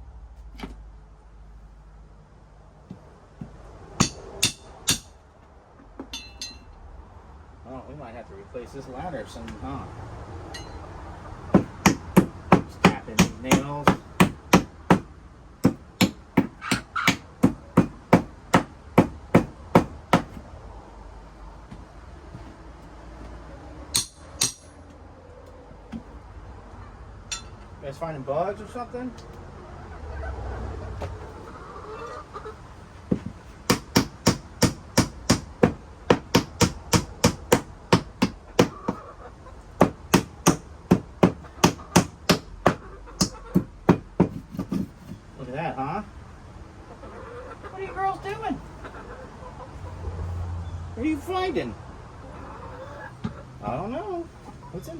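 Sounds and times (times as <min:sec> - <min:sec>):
hammer tapping nails into wood: 0:11.5 - 0:20.4, 0:33.1 - 0:39.0, 0:39.8 - 0:44.9.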